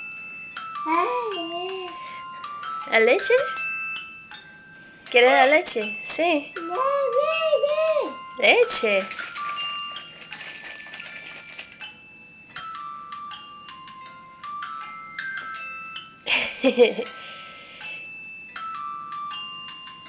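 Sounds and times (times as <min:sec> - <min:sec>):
glockenspiel-like notes: 0:00.0 - 0:20.0
child's vocal sound: 0:00.9 - 0:02.1, 0:06.7 - 0:08.2.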